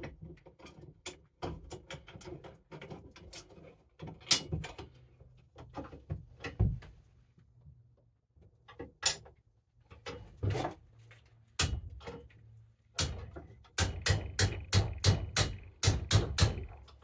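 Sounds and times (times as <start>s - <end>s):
hammer striking steel: 13.8s - 16.7s.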